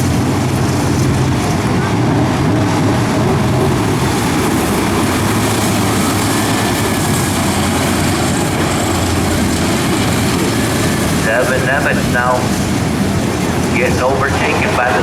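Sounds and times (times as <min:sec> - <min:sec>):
race car engines: 0:00.0 - 0:15.0.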